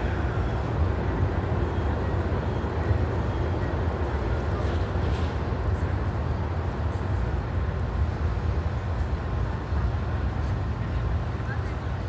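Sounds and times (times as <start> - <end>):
city background rumble: 0.0 - 12.0.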